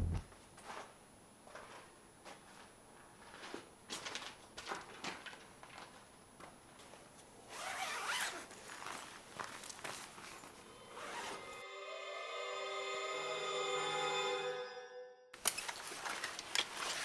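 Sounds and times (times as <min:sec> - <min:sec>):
zipper being pulled: 0:07.5 - 0:08.6, 0:11.0 - 0:11.6.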